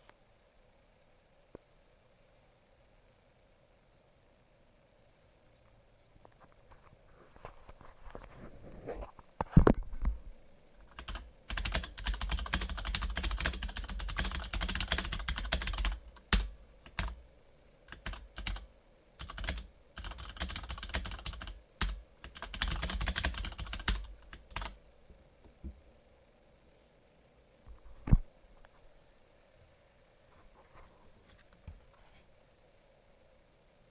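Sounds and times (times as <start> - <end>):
mechanical keyboard typing: 10.8 - 17.2, 17.9 - 24.8.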